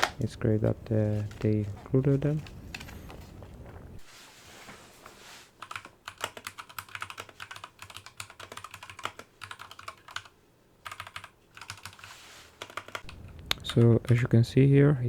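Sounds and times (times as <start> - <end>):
mechanical keyboard clacking: 5.6 - 14.2.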